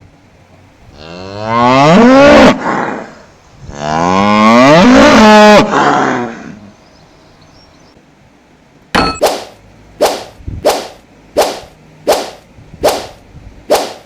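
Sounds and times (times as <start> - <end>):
cow mooing: 0.9 - 6.7.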